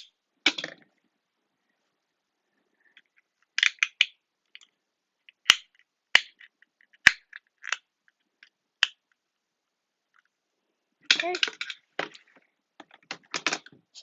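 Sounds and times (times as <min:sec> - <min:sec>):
fidget toys clicking and clacking: 0:02.9 - 0:09.1, 0:11.1 - 0:13.8.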